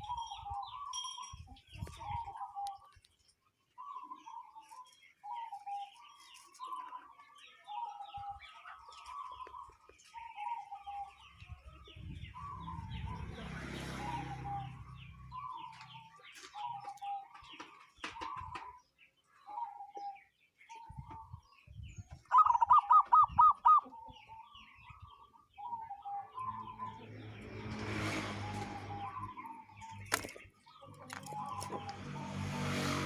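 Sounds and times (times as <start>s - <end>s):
small birds chirping: 0.0s - 33.0s
dove cooing: 22.2s - 30.1s.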